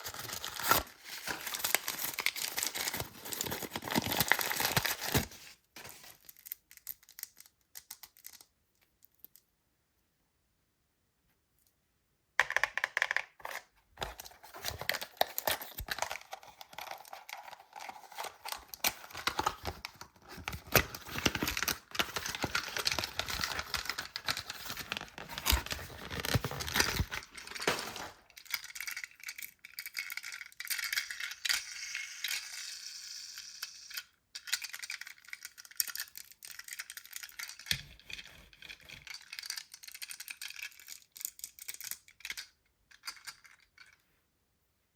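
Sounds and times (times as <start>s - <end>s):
wrapping crinkling and tearing: 0.0s - 8.4s, 14.0s - 30.1s.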